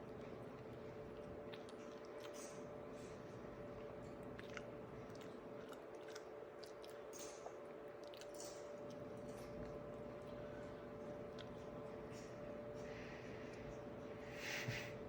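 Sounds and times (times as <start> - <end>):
person chewing food: 0.0 - 12.0
steady low hum: 0.0 - 15.0.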